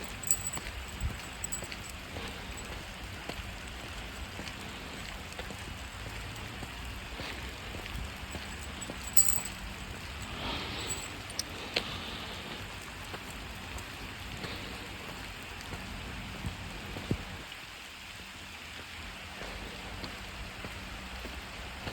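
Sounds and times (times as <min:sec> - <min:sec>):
drips ticking on surfaces: 0:00.0 - 0:17.4
steady rain hiss: 0:00.0 - 0:21.9.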